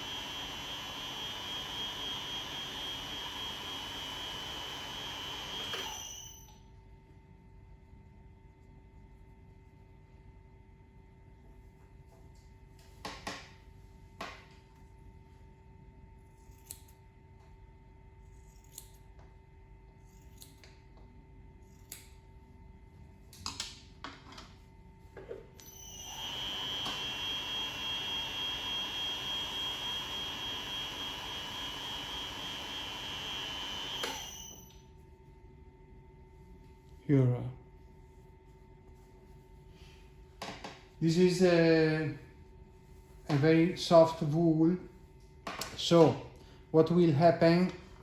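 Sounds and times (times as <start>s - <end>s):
machine blade whining: 0.0s - 6.6s, 25.6s - 34.8s.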